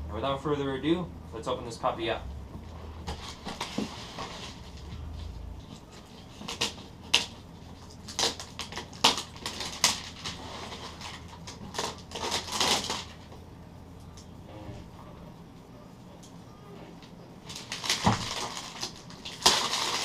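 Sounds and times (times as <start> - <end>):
cardboard packaging rustling: 2.6 - 13.4, 17.4 - 20.0.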